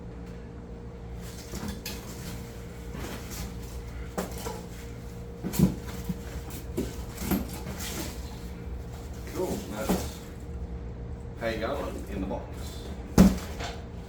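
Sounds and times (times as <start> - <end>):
steady low hum: 0.0 - 14.0
items rustling in cardboard box: 1.2 - 10.4.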